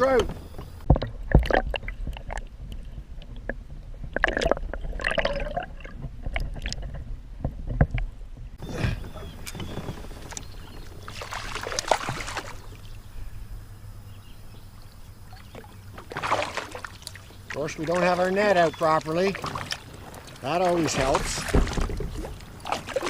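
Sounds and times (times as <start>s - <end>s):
water splashing: 8.6s - 13.1s, 15.2s - 23.0s
gear knocking against kayak: 17.0s - 23.0s.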